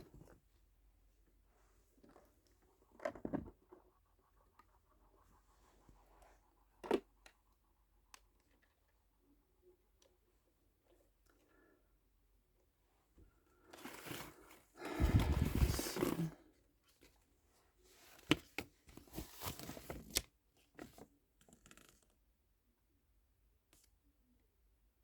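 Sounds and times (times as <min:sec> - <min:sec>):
packaging rustling and crinkling: 0:13.8 - 0:16.3.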